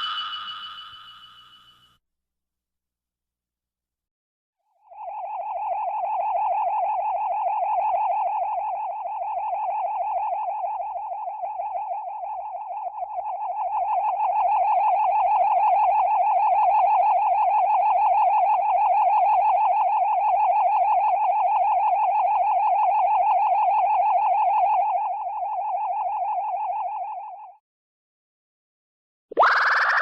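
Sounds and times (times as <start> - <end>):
warbling synthesized tone: 4.8 - 17.4, 29.4 - 30.0.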